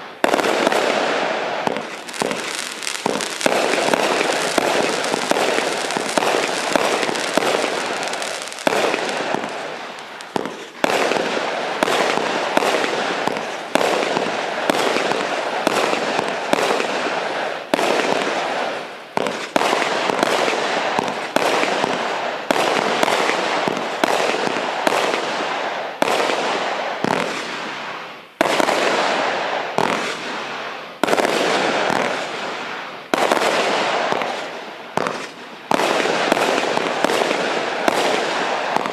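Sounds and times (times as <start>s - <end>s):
firework cake firing reports: 0.2s - 25.3s.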